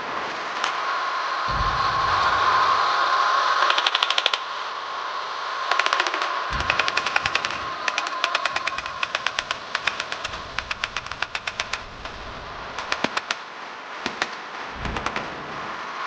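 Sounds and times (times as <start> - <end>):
steady tone: 1.5 - 3.6.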